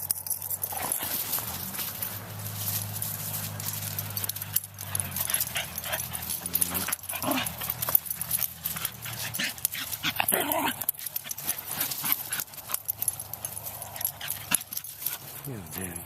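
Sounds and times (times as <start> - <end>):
scuffling clicks: 0.0 - 16.0
steady low hum: 0.0 - 16.0
dogs vocalising: 4.0 - 15.6
dog whining: 5.0 - 12.4.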